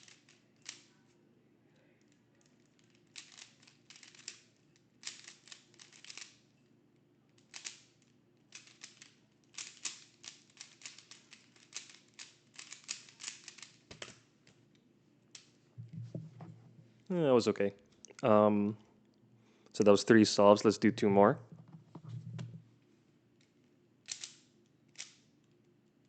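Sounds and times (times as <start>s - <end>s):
plastic puzzle cube clicking: 2.6s - 6.4s, 7.4s - 7.9s, 8.5s - 14.2s, 24.0s - 25.2s
dull knock: 15.8s - 16.7s.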